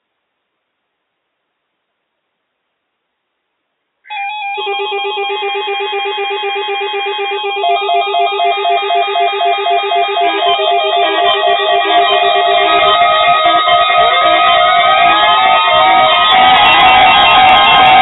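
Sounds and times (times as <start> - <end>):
beeping warbling alert tones: 6.9 - 18.0.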